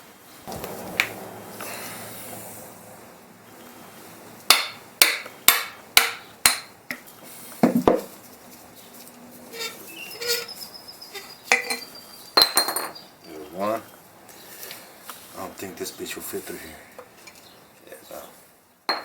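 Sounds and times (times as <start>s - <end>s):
hammer striking metal: 4.5s - 6.7s.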